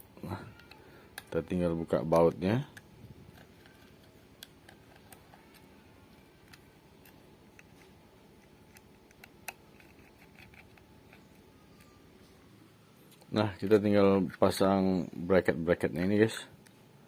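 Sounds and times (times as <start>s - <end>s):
screwdriver and metal parts clicking: 8.6s - 12.0s.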